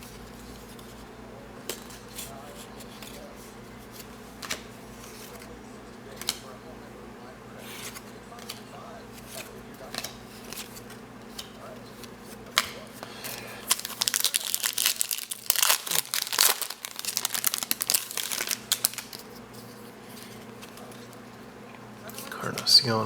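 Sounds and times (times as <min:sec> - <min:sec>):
foil wrapper crinkling and tearing: 0:13.6 - 0:19.4.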